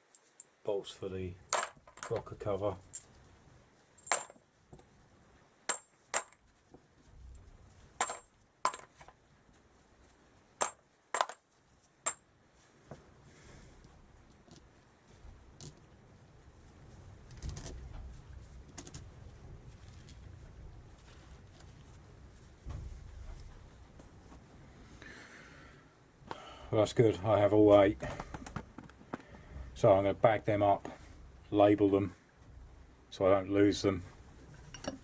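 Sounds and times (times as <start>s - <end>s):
steel bolts clinking on metal: 4.0s - 4.4s, 8.0s - 9.0s, 34.7s - 35.0s.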